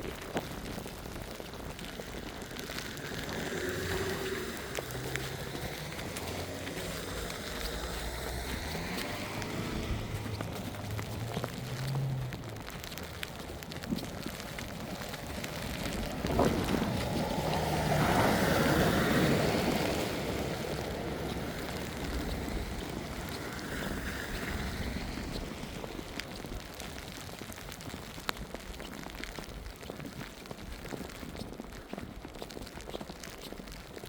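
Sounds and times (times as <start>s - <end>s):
vehicle passing on snow: 1.7s - 28.2s.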